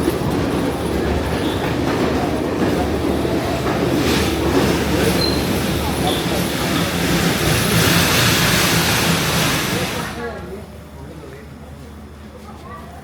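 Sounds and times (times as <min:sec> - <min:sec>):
train carriage rumble: 0:00.0 - 0:13.0
high wheel squeal: 0:05.2 - 0:07.0.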